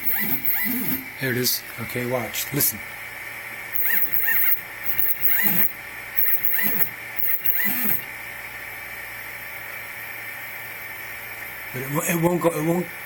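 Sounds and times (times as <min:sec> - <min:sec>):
stepper motors stuttering whine: 0:00.0 - 0:01.1, 0:03.8 - 0:08.0.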